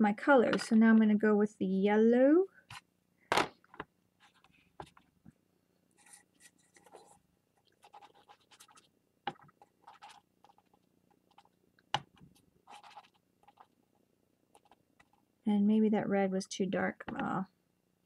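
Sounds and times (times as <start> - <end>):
sponge scrubbing on paper: 7.8 - 8.9.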